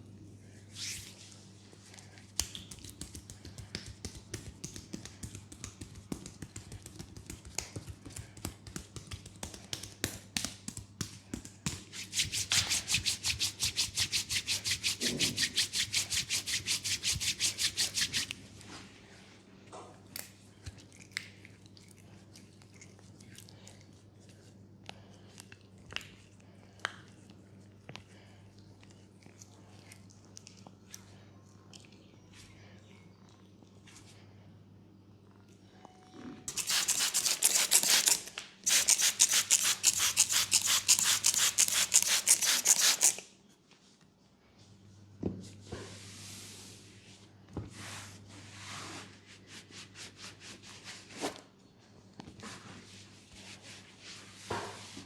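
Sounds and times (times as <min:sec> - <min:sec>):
faint low hum: 0:00.0 - 0:36.7
hands rubbing skin: 0:02.1 - 0:18.4, 0:36.5 - 0:43.2
rapid rhythmic massage strokes: 0:02.5 - 0:18.3.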